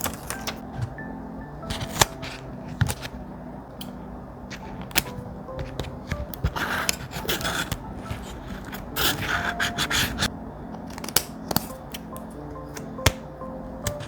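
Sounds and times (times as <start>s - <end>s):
scratchy scraping on paper: 4.5s - 10.3s.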